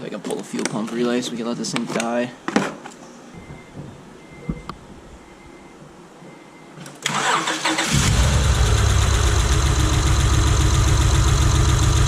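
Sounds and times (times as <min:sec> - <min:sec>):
car engine cranking: 0:07.0 - 0:12.0
car engine idling roughly: 0:07.9 - 0:12.0.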